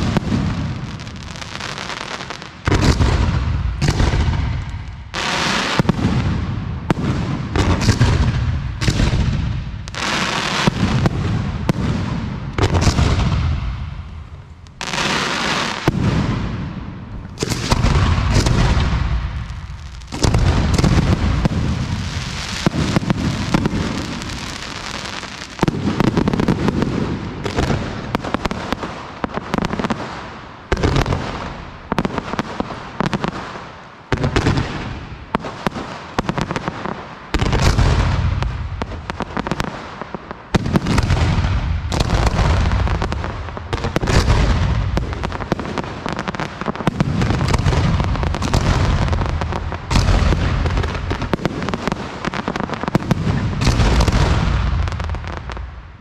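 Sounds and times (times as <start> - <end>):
fireworks bursting with rumbling echo: 0.0 - 56.0.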